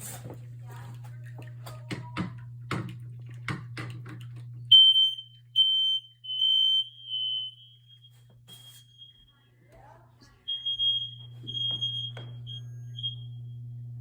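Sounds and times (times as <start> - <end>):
smoke alarm beeps: 4.7 - 9.5, 10.4 - 13.8.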